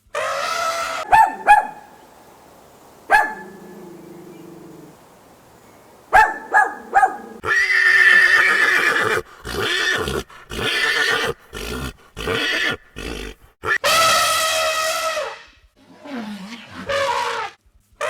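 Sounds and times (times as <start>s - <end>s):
horse neighing: 0.4s - 13.4s.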